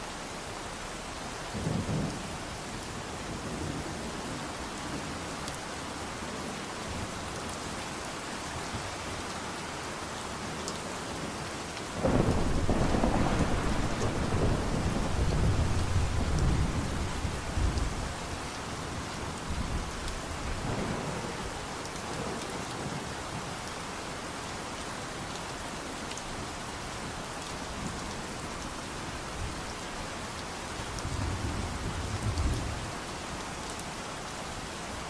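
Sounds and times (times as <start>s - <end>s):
steady rain falling: 0.0s - 35.0s
low thunder rumble: 12.0s - 18.4s.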